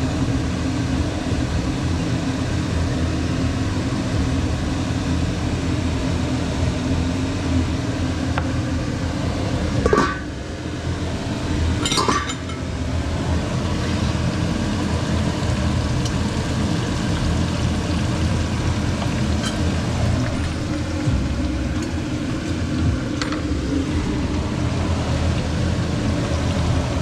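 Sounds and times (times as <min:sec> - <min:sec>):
eggs frying in a pan: 0:00.0 - 0:27.0
low rumble: 0:07.6 - 0:16.1, 0:19.6 - 0:27.0.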